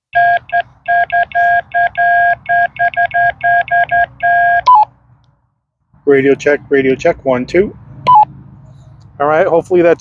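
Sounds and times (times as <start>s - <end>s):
morse code beeps: 0.1s - 4.9s, 8.1s - 8.3s.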